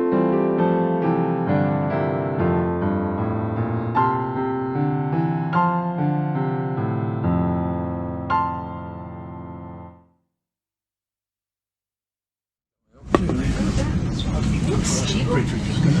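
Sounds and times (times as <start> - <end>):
gentle piano music: 0.0 - 10.1.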